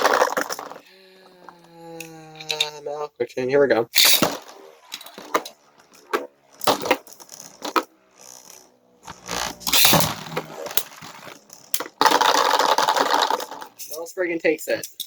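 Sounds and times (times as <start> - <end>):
rattling clatter of tops: 0.0 - 0.9, 4.0 - 14.1
spinning tops clacking: 4.0 - 14.0.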